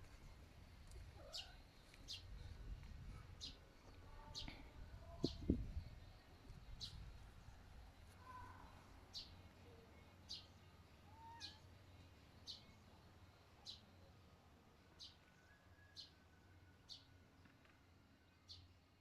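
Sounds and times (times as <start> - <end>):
soft bird chirps: 1.2 - 7.1.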